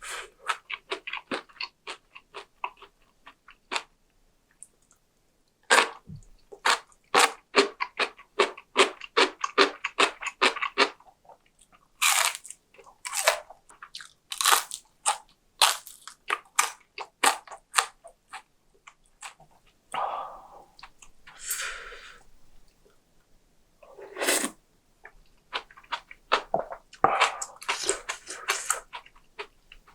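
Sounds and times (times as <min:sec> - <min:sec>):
person chewing crunchy food: 0:00.4 - 0:03.9, 0:05.7 - 0:21.4, 0:25.5 - 0:29.9.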